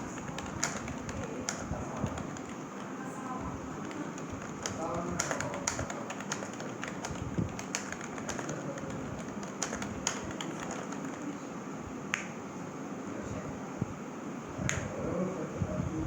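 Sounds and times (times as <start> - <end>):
keyboard key clicks: 0.1 - 3.0, 3.8 - 11.4.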